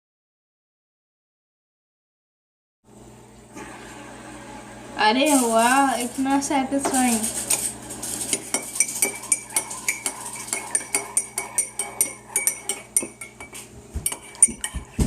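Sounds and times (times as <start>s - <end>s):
spoon clinking against cup: 8.2s - 15.0s.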